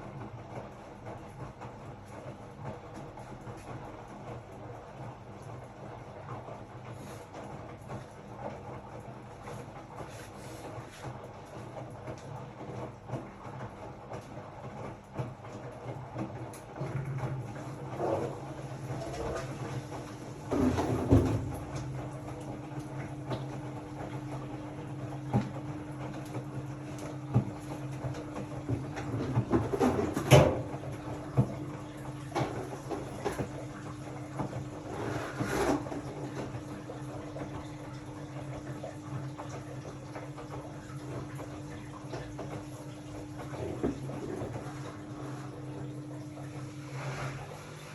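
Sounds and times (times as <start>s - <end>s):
washing machine motor hum: 0.0s - 47.9s
water swishing: 42.6s - 47.9s.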